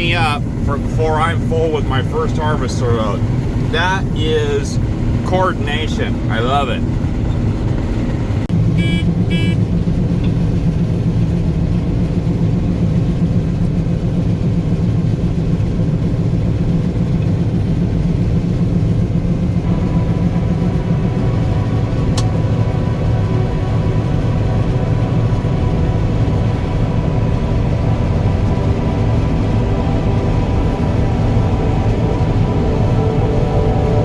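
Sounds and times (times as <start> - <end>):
combine harvester engine drone: 0.0 - 34.0
short beeps: 8.8 - 9.6.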